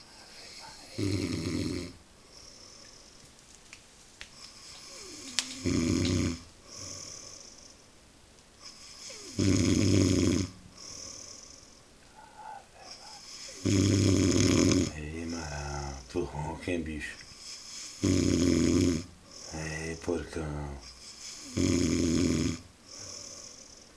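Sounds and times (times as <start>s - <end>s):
man snoring: 0.0s - 2.9s, 4.6s - 7.7s, 8.7s - 23.9s
hissing breath: 4.3s - 7.8s, 8.6s - 9.4s, 10.7s - 14.0s, 17.2s - 18.1s, 20.8s - 21.6s, 22.8s - 23.9s.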